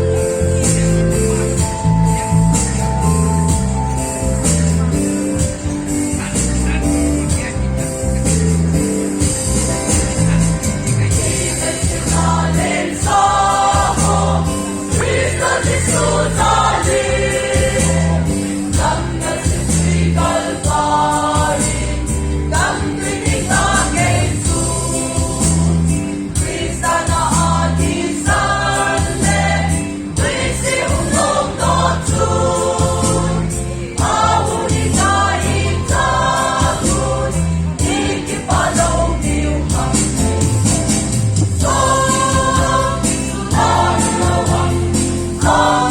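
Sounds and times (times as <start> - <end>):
backing music with bass beat: 0.0 - 45.9
group singing gospel song: 11.1 - 45.9.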